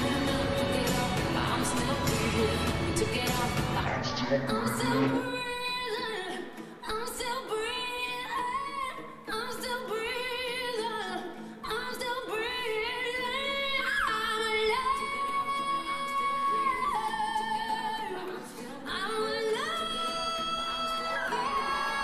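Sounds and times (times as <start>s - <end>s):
slow sung melody with accompaniment: 0.0s - 22.0s.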